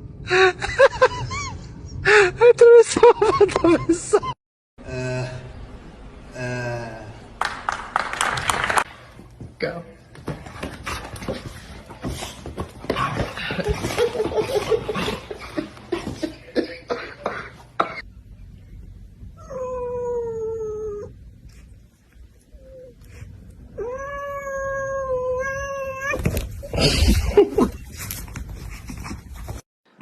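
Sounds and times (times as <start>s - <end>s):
cat yowling: 23.8s - 26.3s.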